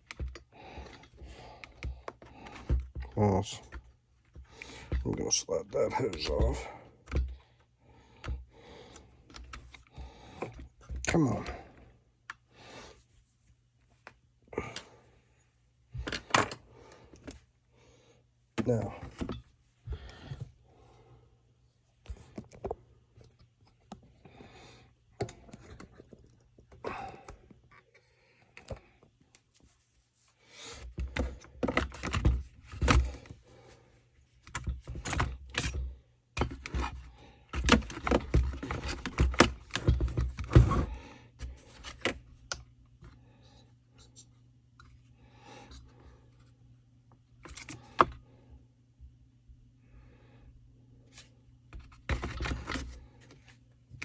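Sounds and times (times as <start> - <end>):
parts rattling and scraping: 34.4 - 42.3.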